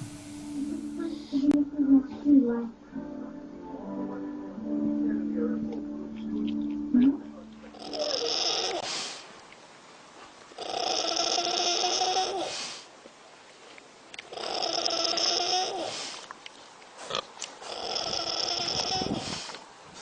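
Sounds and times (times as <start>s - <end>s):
animal snoring: 7.7s - 9.2s, 10.6s - 12.7s, 14.3s - 16.2s, 17.0s - 19.4s.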